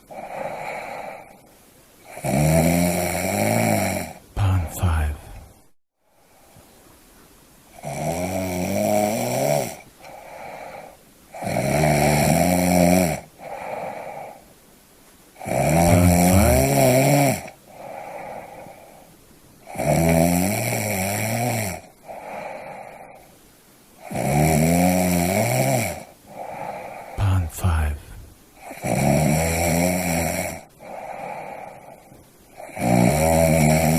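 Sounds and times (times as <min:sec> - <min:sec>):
person snoring: 0:00.0 - 0:01.4, 0:02.0 - 0:05.5, 0:07.7 - 0:14.4, 0:15.4 - 0:19.0, 0:19.7 - 0:23.2, 0:24.0 - 0:33.9
quiet breath: 0:00.0 - 0:02.1, 0:04.4 - 0:07.2, 0:09.7 - 0:11.4, 0:13.3 - 0:14.6, 0:15.9 - 0:19.7, 0:21.8 - 0:24.1, 0:26.0 - 0:28.8, 0:30.6 - 0:32.8.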